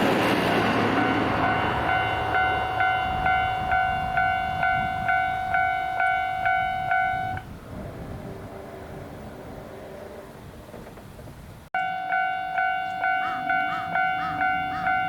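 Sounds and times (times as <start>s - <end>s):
level crossing warning bell ringing: 0.2s - 7.4s, 11.8s - 15.0s.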